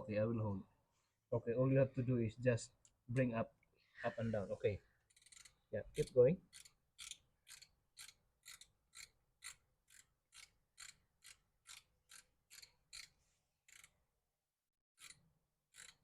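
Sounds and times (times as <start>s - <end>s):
faint ratchet clicks: 5.0s - 14.0s, 15.0s - 16.0s.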